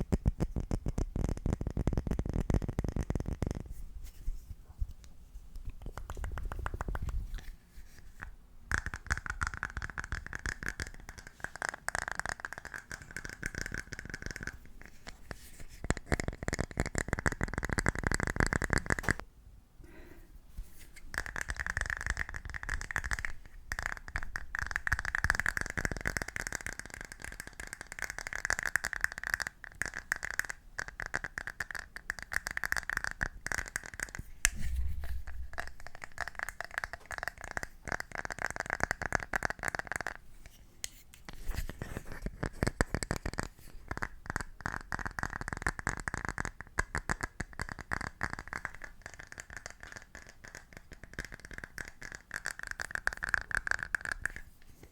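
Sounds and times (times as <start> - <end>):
rapid tapping and scratching: 41.6 - 54.9.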